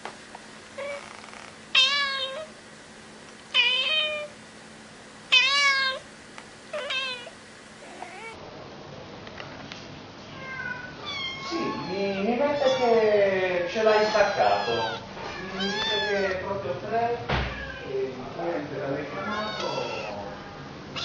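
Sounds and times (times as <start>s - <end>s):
kitten meowing: 0.8s - 2.5s, 3.6s - 4.3s, 5.3s - 6.0s, 6.7s - 8.4s, 10.4s - 13.1s, 13.8s - 16.4s, 19.1s - 20.3s.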